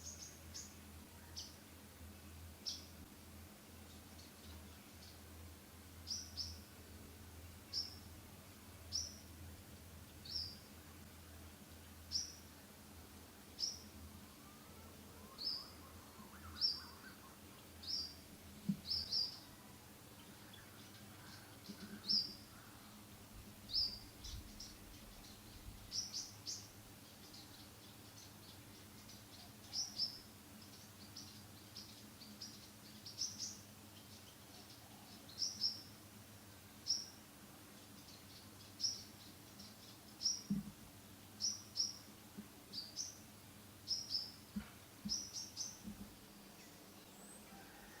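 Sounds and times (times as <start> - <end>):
faint steady hum: 0.0 - 48.0.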